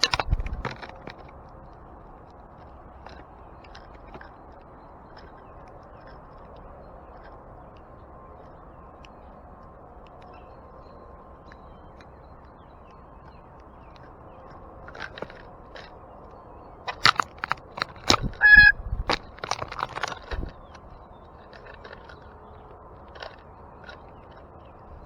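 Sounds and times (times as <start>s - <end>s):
birds pecking at feeder: 0.0s - 1.7s, 13.3s - 25.0s
short honking call: 18.4s - 18.8s.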